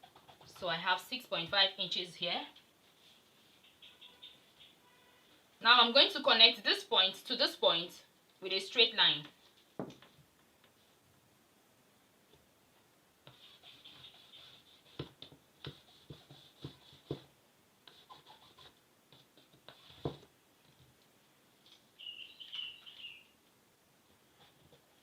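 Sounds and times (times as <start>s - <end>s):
chalk scratching across fabric: 13.2s - 17.3s, 17.9s - 20.2s.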